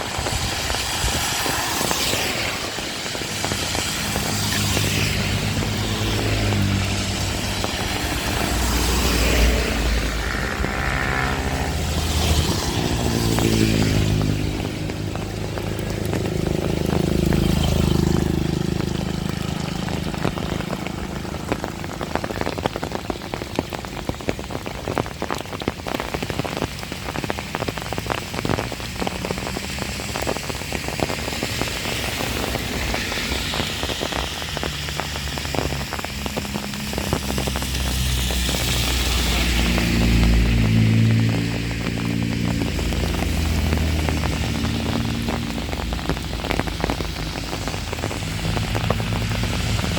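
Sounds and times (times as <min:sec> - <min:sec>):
motor vehicle passing: 0:00.0 - 0:24.0, 0:26.8 - 0:49.9
heavy rain falling: 0:00.0 - 0:49.9
low engine hum: 0:03.3 - 0:23.8, 0:27.8 - 0:49.9.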